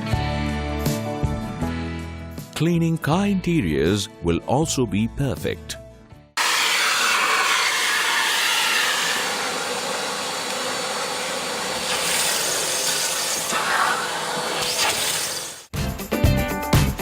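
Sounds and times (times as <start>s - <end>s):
vacuum cleaner running: 6.4s - 15.7s.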